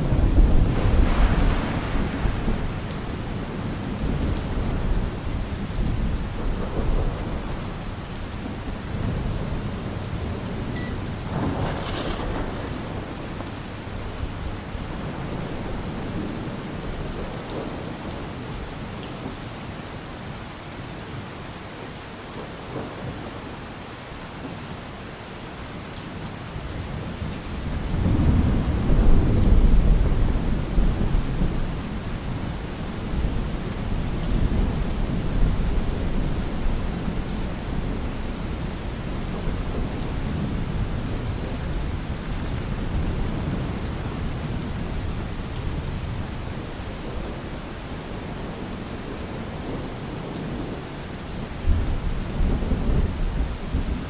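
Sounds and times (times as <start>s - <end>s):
thunder rolling: 0.0s - 17.8s, 27.6s - 47.4s
steady rain: 0.0s - 54.0s.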